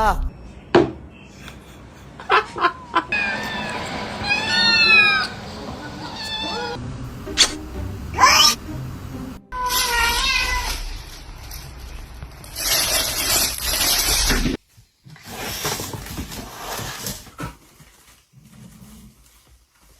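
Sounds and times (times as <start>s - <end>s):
cat meowing: 2.8s - 6.8s, 8.2s - 8.6s, 9.5s - 11.0s.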